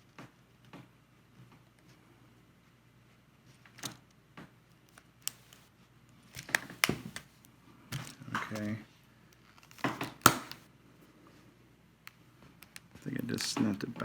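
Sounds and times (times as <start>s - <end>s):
plastic case clicking and snapping: 6.4s - 7.3s, 9.6s - 10.6s.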